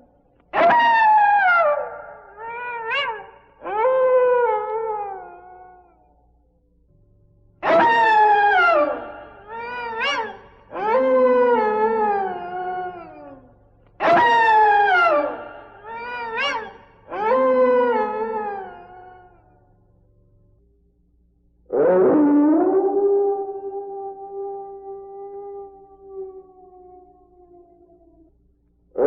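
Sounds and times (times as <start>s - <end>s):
animal howling: 0.6s - 6.1s, 7.6s - 19.7s, 21.7s - 28.3s.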